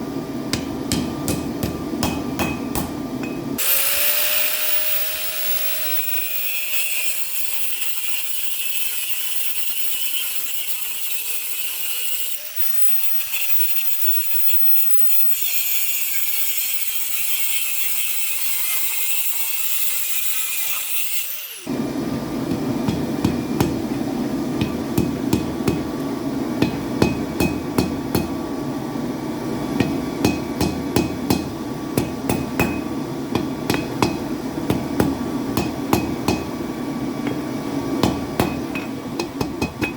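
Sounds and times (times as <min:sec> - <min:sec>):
hammer striking steel anvil: 0:00.5 - 0:03.5, 0:22.5 - 0:24.0, 0:24.6 - 0:25.9, 0:26.6 - 0:28.4, 0:29.8 - 0:36.6, 0:38.0 - 0:39.9.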